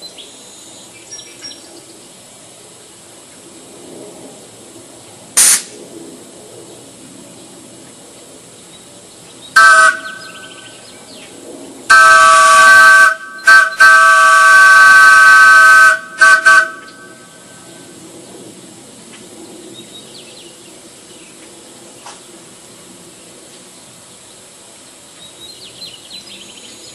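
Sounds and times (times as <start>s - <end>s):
chime train whistle blowing: 11.9s - 17.2s.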